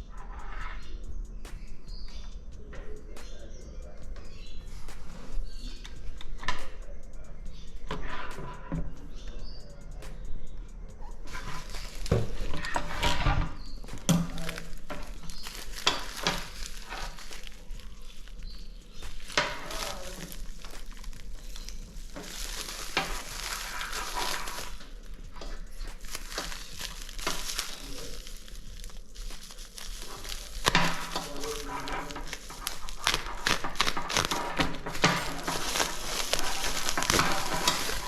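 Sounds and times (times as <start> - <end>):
parts clicking and knocking: 9.8 - 38.0
plastic packaging crinkling: 11.1 - 38.0.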